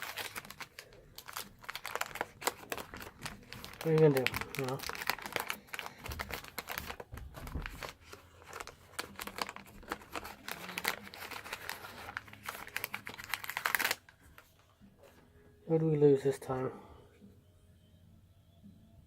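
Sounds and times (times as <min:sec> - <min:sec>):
wax paper wrapper crinkling and tearing: 0:00.0 - 0:14.5.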